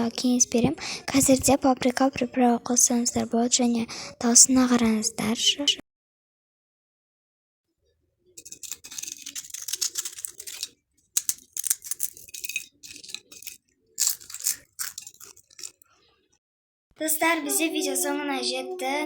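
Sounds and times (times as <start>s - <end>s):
potato chips crunching: 8.4s - 15.9s.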